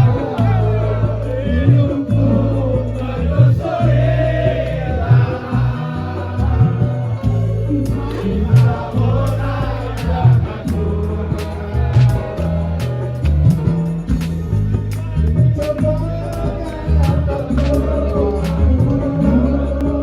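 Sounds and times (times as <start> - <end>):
bass beat: 0.0 - 20.0
person singing: 16.0 - 20.0.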